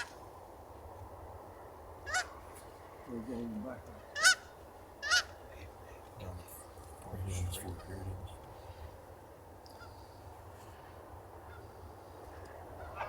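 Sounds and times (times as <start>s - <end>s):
goose honks: 2.1s - 2.4s, 4.0s - 5.4s, 12.7s - 13.0s.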